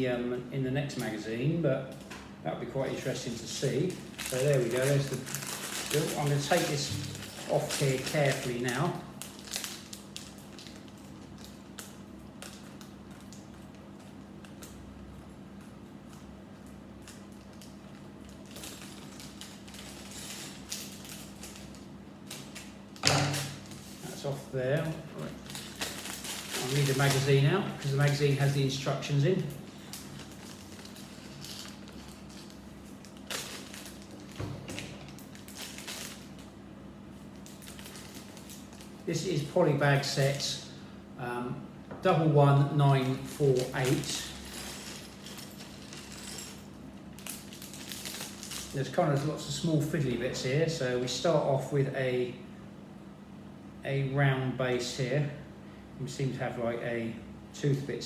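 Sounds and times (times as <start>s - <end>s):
steady low hum: 0.0s - 58.0s
clicks and crinkles of handling: 2.9s - 28.8s, 29.4s - 36.5s, 37.2s - 39.0s, 43.0s - 49.5s.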